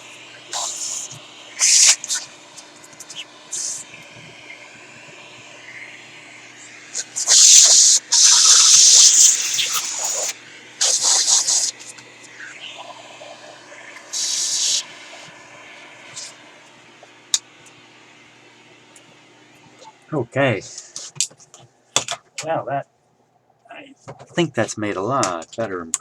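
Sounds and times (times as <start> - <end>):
compressed air hissing: 0.0 - 16.6.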